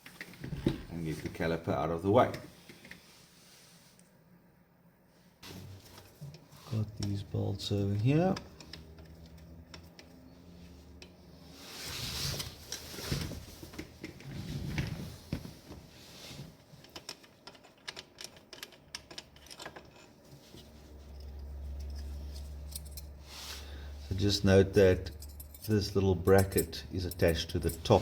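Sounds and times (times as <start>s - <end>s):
tool handling rustling: 5.4s - 23.2s, 25.0s - 28.0s.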